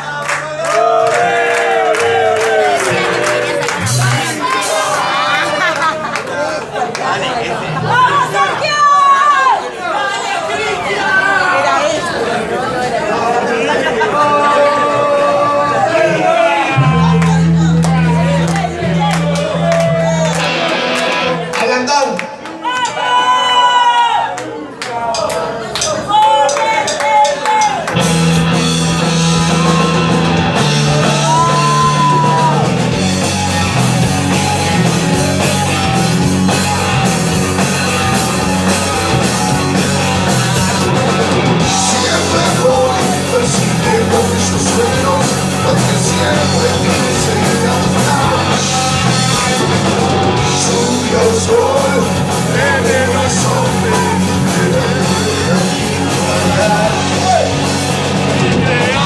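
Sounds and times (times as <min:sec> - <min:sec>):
singer singing and yelling: 0:00.0 - 0:06.8, 0:07.5 - 0:59.0
rock band playing live: 0:01.6 - 0:06.9, 0:15.8 - 0:23.0, 0:25.1 - 0:59.0.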